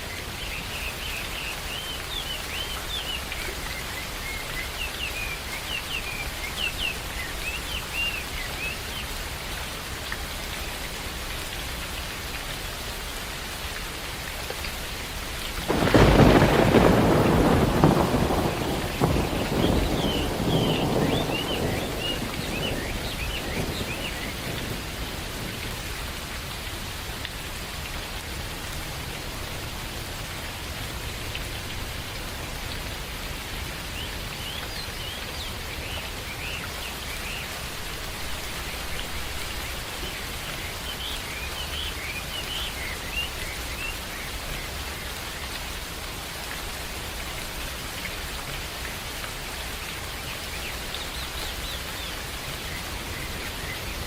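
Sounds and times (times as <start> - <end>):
steady rain falling: 0.0 - 54.0
birds chirping: 15.4 - 25.8
low thunder rumble: 15.7 - 25.7.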